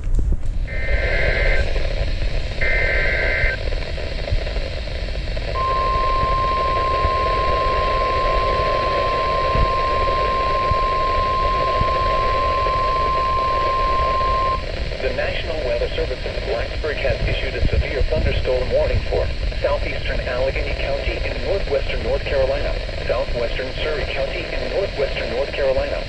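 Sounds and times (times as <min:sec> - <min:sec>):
radio signal hiss: 0:00.4 - 0:26.0
digital data header bursts: 0:00.7 - 0:04.6, 0:05.5 - 0:26.0
single-pitch warning alarm tone: 0:02.6 - 0:03.6, 0:05.6 - 0:14.7.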